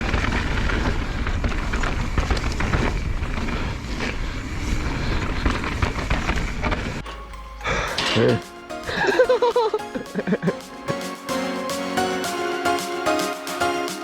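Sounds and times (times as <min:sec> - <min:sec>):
bike rattling and knocking: 0:00.0 - 0:07.3
tyre noise: 0:00.0 - 0:10.8.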